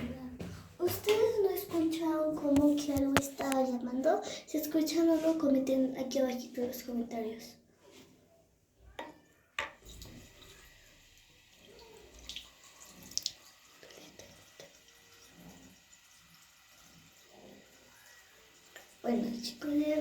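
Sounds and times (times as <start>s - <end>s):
water running from a tap: 9.8s - 20.0s.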